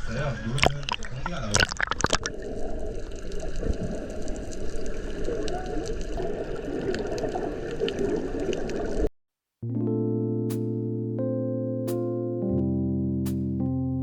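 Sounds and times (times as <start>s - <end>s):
churning water: 0.6s - 9.1s.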